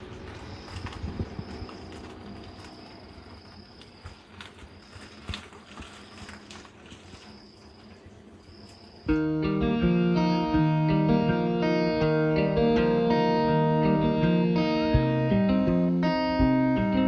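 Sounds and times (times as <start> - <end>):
insect trilling: 0.2 - 9.2.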